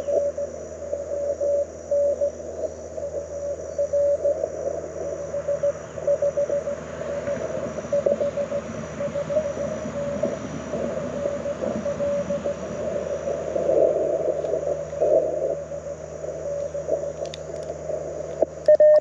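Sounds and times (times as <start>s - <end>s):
morse code beeps: 0.0s - 2.4s, 3.0s - 13.4s, 18.0s - 19.0s
low rumble: 0.0s - 18.9s.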